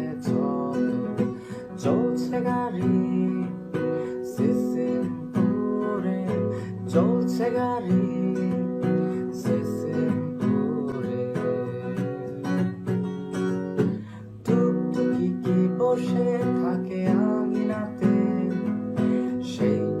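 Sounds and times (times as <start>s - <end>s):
strummed acoustic guitar: 0.0s - 20.0s.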